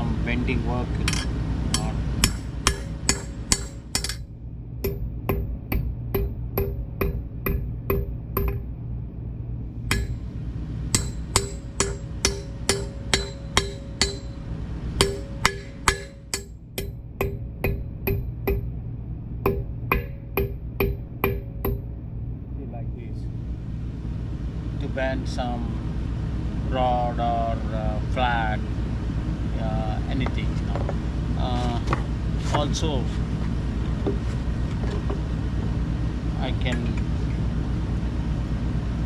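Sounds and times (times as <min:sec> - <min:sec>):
hammer striking metal: 0:00.9 - 0:08.7, 0:09.9 - 0:18.8, 0:19.4 - 0:22.0.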